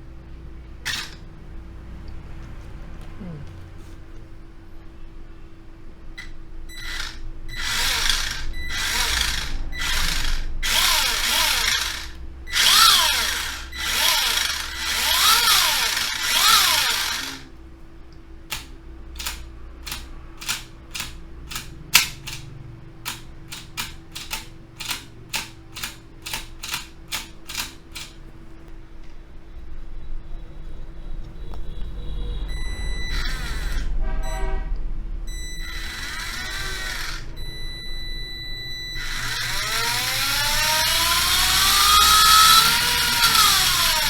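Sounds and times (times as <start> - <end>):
electric screwdriver whirring: 0.9 - 1.2, 6.2 - 17.5, 18.5 - 22.4, 23.1 - 28.2, 33.1 - 33.9, 35.6 - 37.6, 39.0 - 44.0
sharp clicks: 0.9 - 1.3, 18.1 - 28.2, 39.0 - 44.0.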